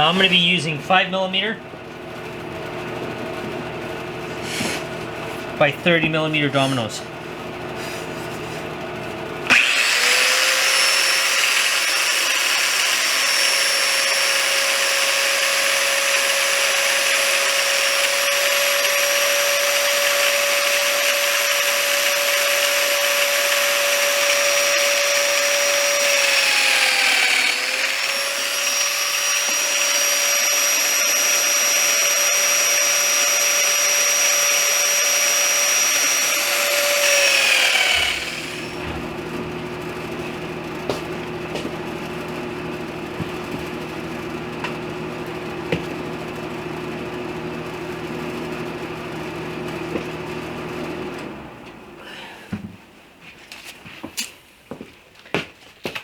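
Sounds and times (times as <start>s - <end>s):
power tool motor whining: 0.0s - 0.8s, 9.4s - 41.7s.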